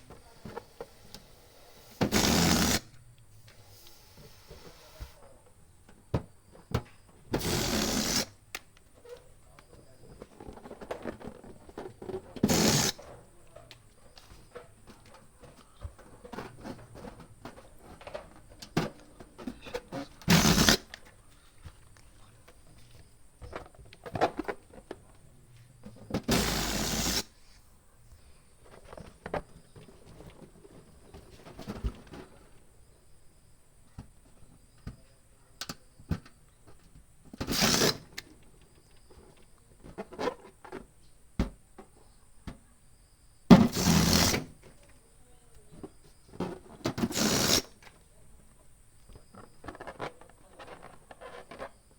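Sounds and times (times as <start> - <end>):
balloon pump air rushes: 1.0 - 2.9, 7.4 - 8.4, 12.4 - 13.0, 20.2 - 20.9, 26.2 - 27.4, 37.4 - 38.1, 43.5 - 44.5, 47.0 - 47.8
small clicks and rubbing: 49.1 - 51.8.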